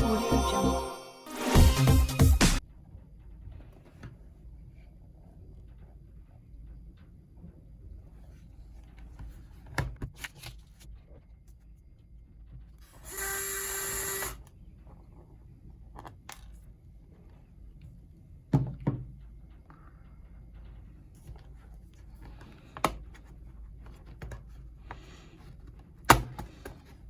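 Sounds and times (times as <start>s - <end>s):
electric screwdriver whining: 12.8s - 14.5s.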